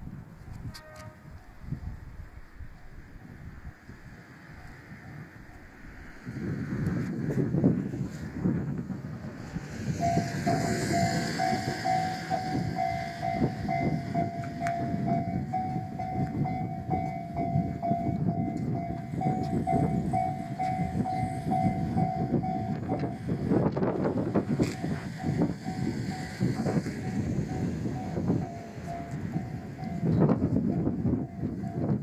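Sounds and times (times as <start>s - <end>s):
railcar rumble and wheel clatter: 0.0s - 32.0s
level crossing alarm bell: 10.0s - 32.0s.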